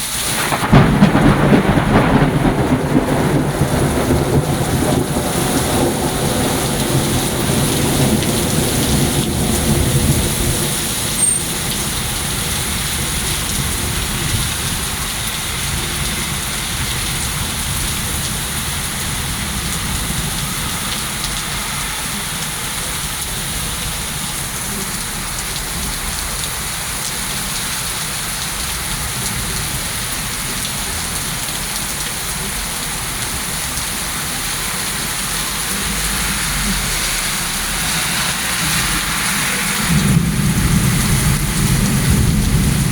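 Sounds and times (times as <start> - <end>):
heavy rain pouring: 0.0 - 42.9
thunder rumbling: 0.2 - 21.6, 35.7 - 42.9.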